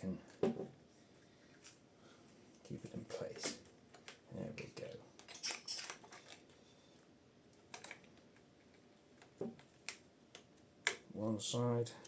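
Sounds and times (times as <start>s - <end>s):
plastic parts clicking: 7.6s - 8.2s.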